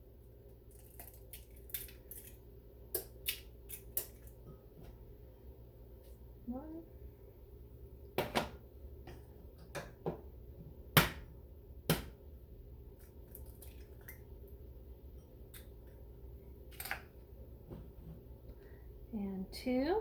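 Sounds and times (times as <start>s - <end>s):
eggs cracking on bowl edge: 0.7s - 4.4s, 12.9s - 14.6s, 15.2s - 17.2s.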